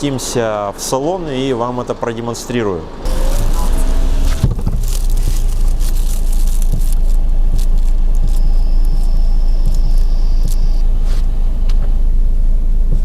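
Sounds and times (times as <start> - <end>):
thin high whine: 3.0 - 11.7
steady low rumble: 3.0 - 13.0.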